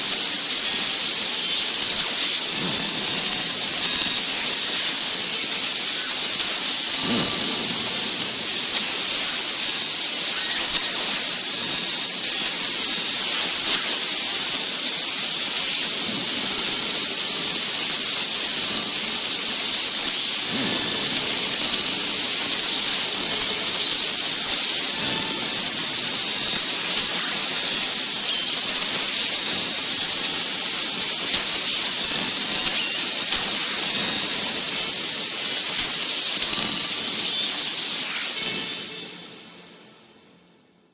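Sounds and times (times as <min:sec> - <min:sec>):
tv static hiss: 0:00.0 - 0:40.2.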